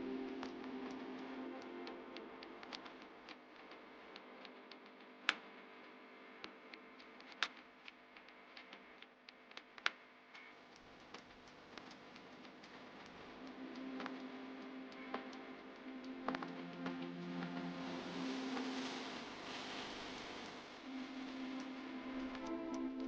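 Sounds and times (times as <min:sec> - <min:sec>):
faint background music: 0:00.0 - 0:08.7, 0:10.4 - 0:23.0
light clicks and taps: 0:06.4 - 0:17.7.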